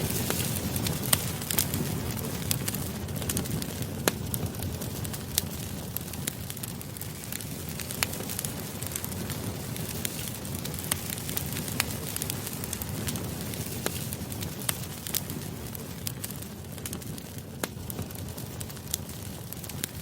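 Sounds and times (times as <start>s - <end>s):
campfire crackling: 0.0s - 20.0s
pops and snaps of burning wood: 0.0s - 20.0s.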